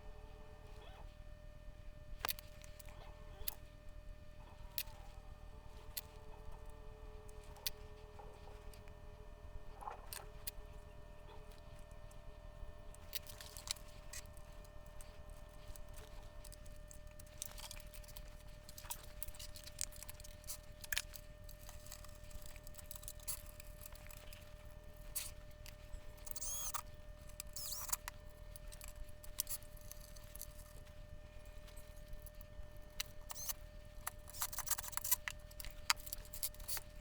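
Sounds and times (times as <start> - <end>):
faint steady hum: 0.0 - 37.0
small clicks and taps: 13.0 - 37.0.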